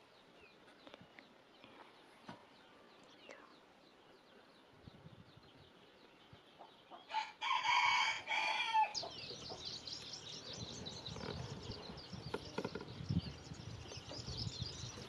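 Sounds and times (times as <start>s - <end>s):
small birds chirping: 0.0s - 15.0s
rooster crowing: 7.1s - 9.0s.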